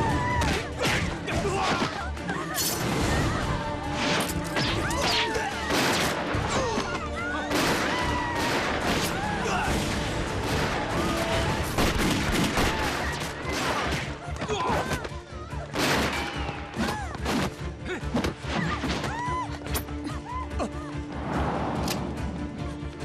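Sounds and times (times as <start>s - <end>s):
voices shouting: 0.0s - 9.9s
dramatic music: 0.0s - 23.0s.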